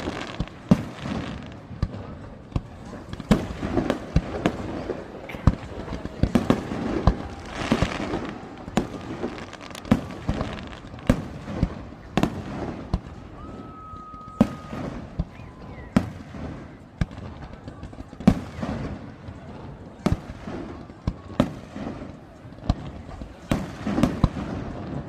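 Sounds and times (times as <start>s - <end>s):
fireworks crackling hiss: 0.0s - 19.2s
fireworks bangs: 0.0s - 25.0s.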